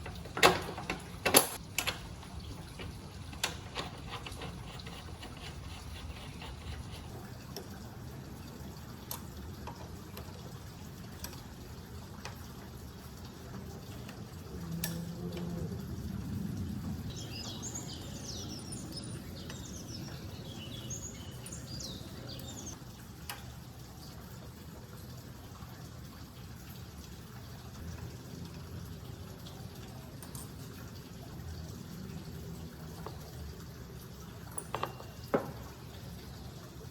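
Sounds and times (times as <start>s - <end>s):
birds chirping rapidly: 17.1s - 22.8s.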